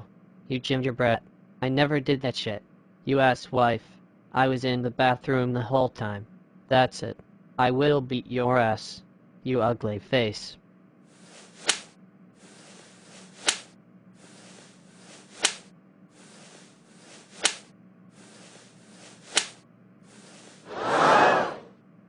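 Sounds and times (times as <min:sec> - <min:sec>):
hiss: 0:11.1 - 0:17.6, 0:18.2 - 0:21.2
whip-crack slaps: 0:11.6 - 0:12.0, 0:13.4 - 0:13.7, 0:15.3 - 0:15.7, 0:17.3 - 0:17.7, 0:19.3 - 0:19.6.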